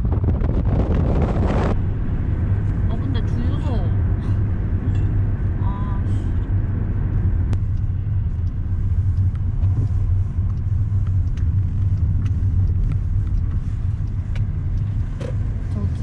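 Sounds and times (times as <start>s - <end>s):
car road rumble: 0.0s - 16.0s
faint ticks: 6.4s - 16.0s.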